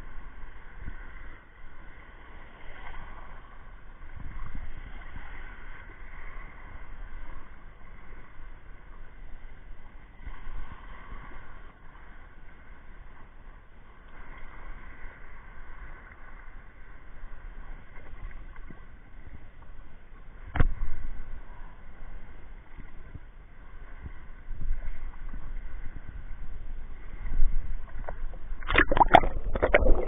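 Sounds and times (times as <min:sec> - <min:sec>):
wind rumble on microphone: 0:00.0 - 0:30.0
sea water splashing: 0:13.8 - 0:30.0.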